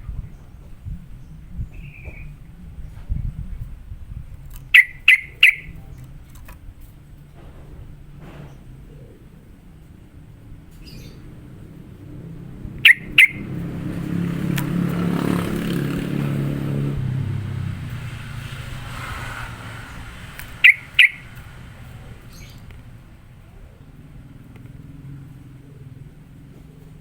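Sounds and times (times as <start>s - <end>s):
vehicle engine passing by: 0.1s - 27.0s
bird sharp double chirp: 4.7s - 5.8s, 12.8s - 13.6s, 20.4s - 21.5s.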